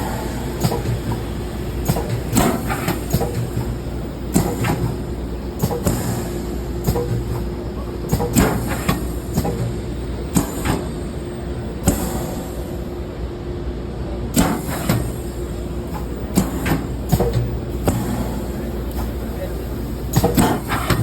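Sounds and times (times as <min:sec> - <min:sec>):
power cylinder sharp clacks: 0:00.0 - 0:11.0, 0:14.3 - 0:21.0
steady hum: 0:00.0 - 0:21.0.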